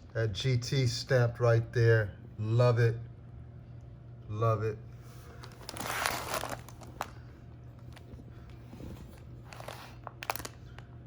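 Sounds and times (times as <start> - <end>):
packing material crinkling: 5.2 - 8.2, 9.0 - 11.0.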